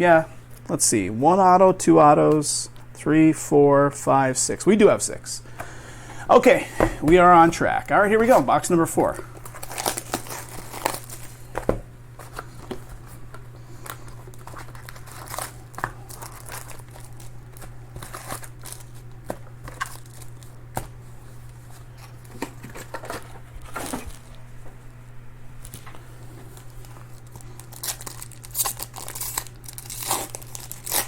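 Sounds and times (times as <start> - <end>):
plastic wrapping crinkling and tearing: 8.2 - 11.6, 13.8 - 20.9, 21.5 - 24.5, 25.6 - 31.0.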